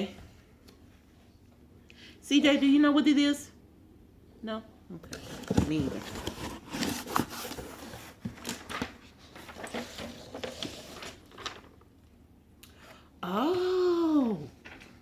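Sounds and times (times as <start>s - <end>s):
packaging rustling and crinkling: 5.1s - 11.8s.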